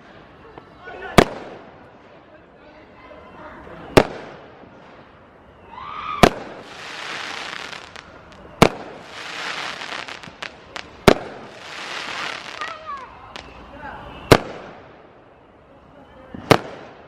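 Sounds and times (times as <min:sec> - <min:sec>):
fireworks bangs: 0:01.1 - 0:02.3, 0:03.8 - 0:05.2, 0:06.1 - 0:15.2, 0:16.3 - 0:17.0
fireworks crackling: 0:03.7 - 0:17.0
small fireworks pops: 0:03.9 - 0:05.1, 0:06.2 - 0:13.6, 0:14.2 - 0:15.0, 0:16.3 - 0:17.0.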